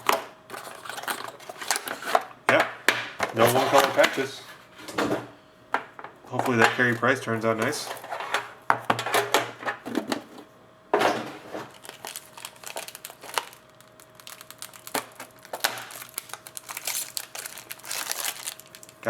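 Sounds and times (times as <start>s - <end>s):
plastic wrapping crinkling and tearing: 11.7s - 19.0s.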